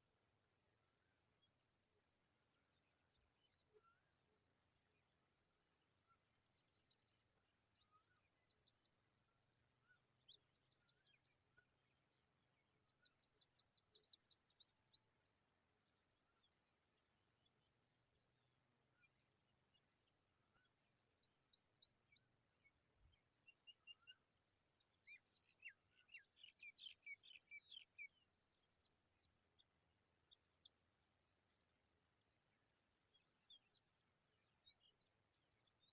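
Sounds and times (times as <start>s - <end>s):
skylarks chirping: 12.8s - 15.1s, 23.1s - 29.7s.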